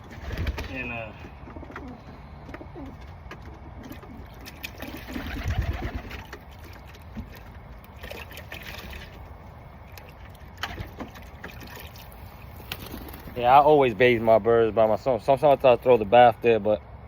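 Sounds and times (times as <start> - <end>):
pigeons cooing: 0.0 - 6.4
water trickling and splashing: 3.7 - 16.6.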